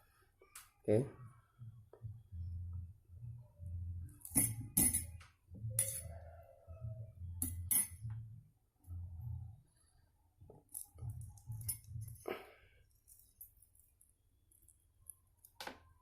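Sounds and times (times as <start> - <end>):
glass clinking: 4.2 - 5.2, 5.8 - 6.2, 7.4 - 8.1.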